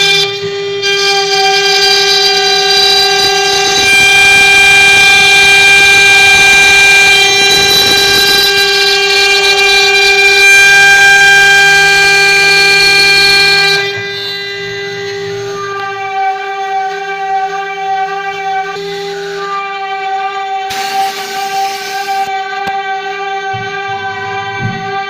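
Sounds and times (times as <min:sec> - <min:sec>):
bit cutting wood: 0:00.0 - 0:16.3, 0:20.5 - 0:22.8
router spindle whine: 0:00.0 - 0:25.0.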